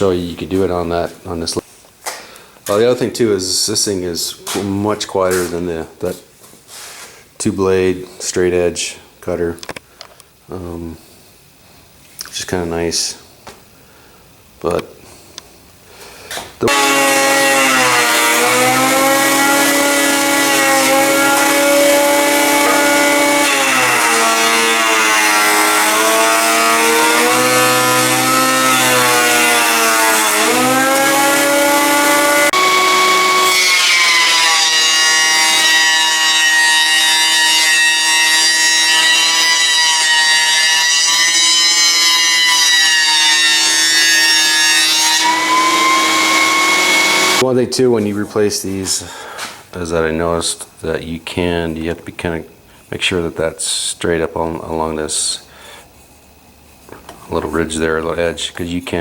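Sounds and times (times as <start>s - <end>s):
jointer planer motor whining: 16.7s - 47.4s.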